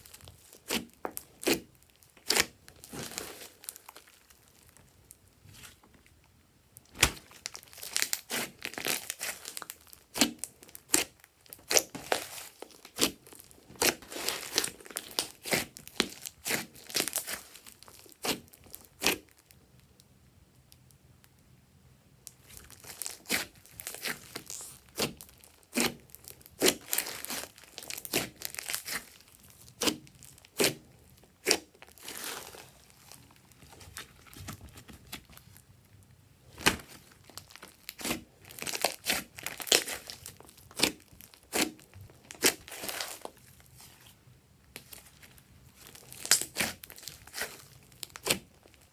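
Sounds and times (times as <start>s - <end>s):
slime squeezed by hand: 45.8s - 48.6s.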